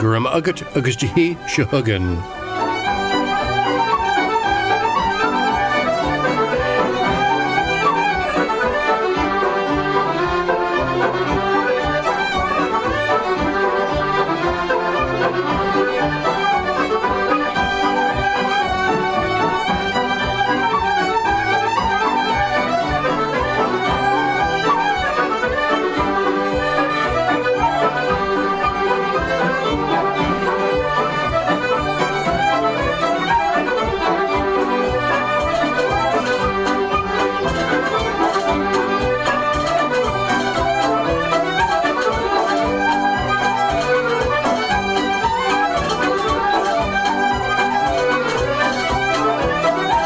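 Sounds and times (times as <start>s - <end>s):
folk dance tune on accordion: 0.0s - 2.6s, 18.7s - 50.0s
fiddle: 0.0s - 50.0s.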